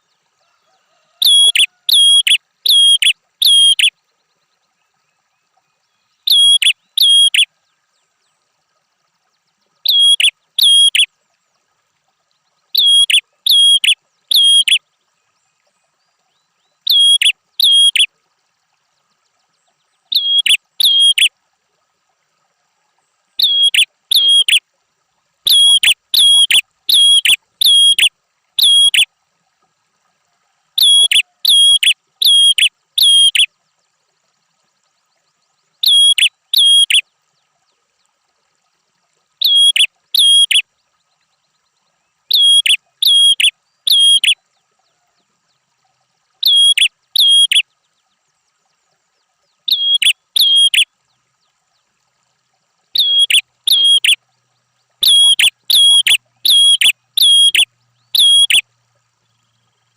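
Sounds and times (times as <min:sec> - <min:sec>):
bird whistled calls: 0:01.2 - 0:03.9, 0:06.3 - 0:07.5, 0:09.9 - 0:11.1, 0:12.8 - 0:14.8, 0:16.9 - 0:18.1, 0:20.1 - 0:21.3, 0:23.4 - 0:24.6, 0:25.5 - 0:29.1, 0:30.8 - 0:33.5, 0:35.8 - 0:37.0, 0:39.4 - 0:40.6, 0:42.3 - 0:44.4, 0:46.4 - 0:47.6, 0:49.7 - 0:50.9, 0:53.0 - 0:54.2, 0:55.0 - 0:58.6.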